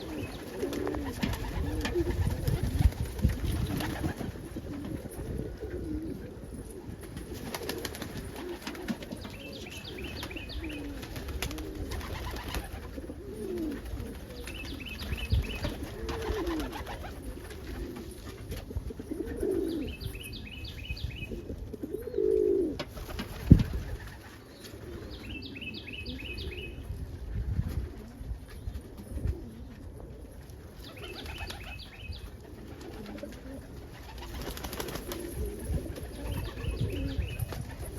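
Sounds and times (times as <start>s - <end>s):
pigeon cooing: 0.0s - 2.7s, 9.4s - 18.2s, 19.0s - 20.0s, 21.3s - 22.9s, 32.6s - 37.9s.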